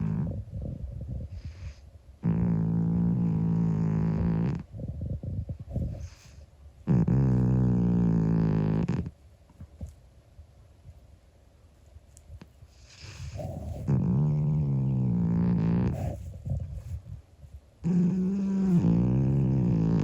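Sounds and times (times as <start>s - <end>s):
cat snoring: 0.0s - 9.1s, 12.7s - 16.7s, 17.8s - 20.0s.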